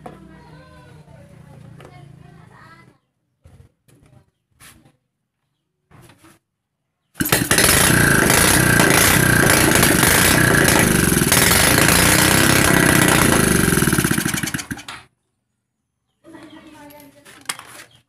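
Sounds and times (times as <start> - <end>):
motorcycle engine running: 7.2 - 14.9.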